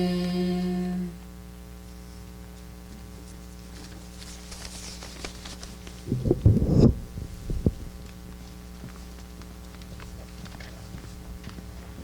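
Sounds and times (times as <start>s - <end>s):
sound system hum: 0.0s - 12.0s
faint rustles and clicks: 1.8s - 12.0s
dull low thumps: 6.1s - 8.0s.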